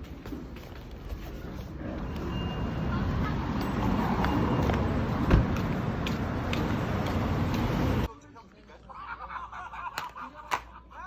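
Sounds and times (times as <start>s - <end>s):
rumbling traffic: 0.0s - 8.1s.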